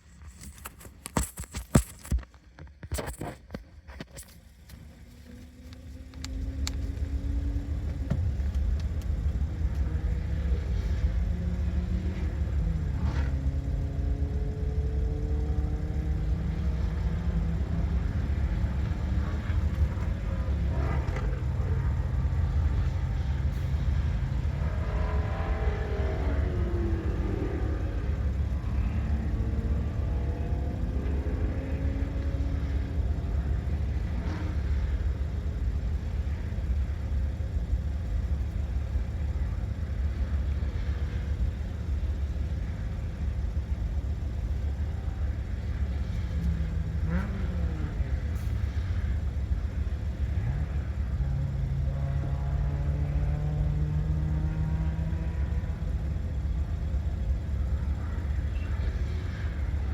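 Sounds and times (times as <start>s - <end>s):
car engine revving hard: 9.4s - 34.8s.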